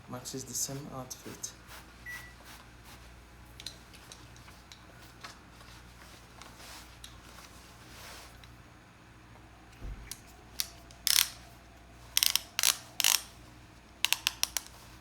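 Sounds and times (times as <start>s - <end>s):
belt ratchet clicking: 10.6s - 11.4s, 12.1s - 13.4s, 14.0s - 14.8s.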